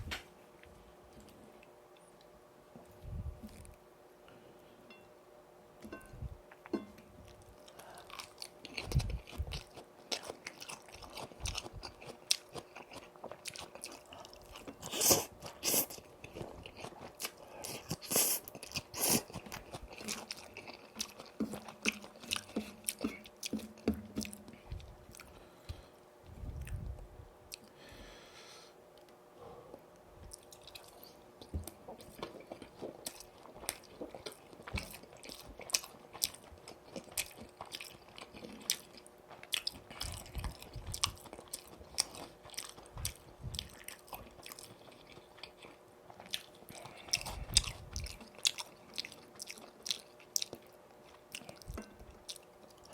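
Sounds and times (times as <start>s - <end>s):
wet chewing: 7.7s - 25.4s, 30.2s - 52.9s.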